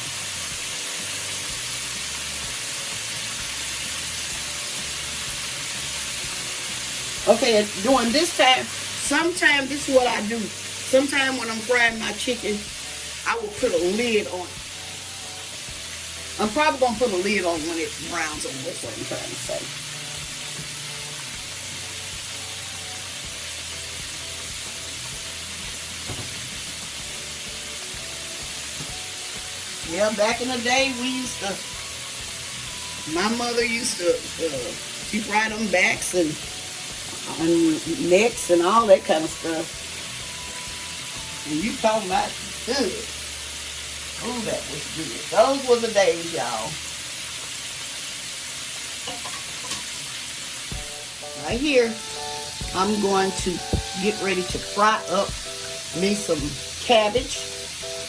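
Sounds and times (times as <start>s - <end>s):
chicken frying in hot oil: 0.0s - 58.0s
small knock: 26.1s - 26.4s.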